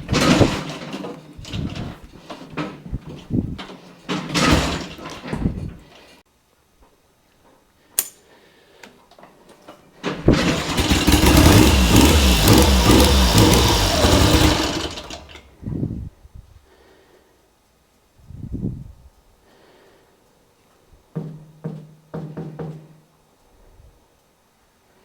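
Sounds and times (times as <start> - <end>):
motorcycle engine running unevenly: 10.3 - 15.4.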